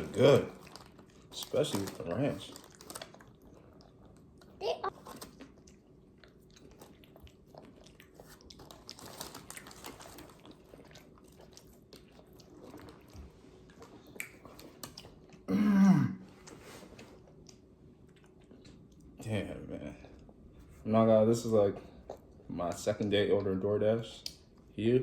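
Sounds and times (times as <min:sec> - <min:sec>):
person chewing food: 0:02.5 - 0:15.5, 0:16.3 - 0:19.2, 0:21.8 - 0:23.5.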